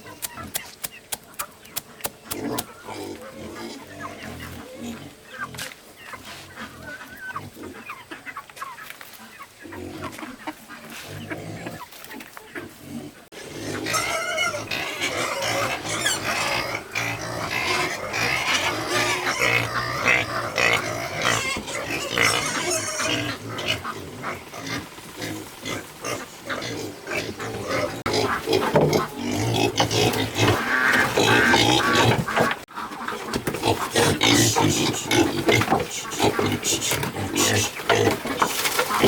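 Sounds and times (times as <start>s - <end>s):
farm animals calling: 0.0s - 39.0s.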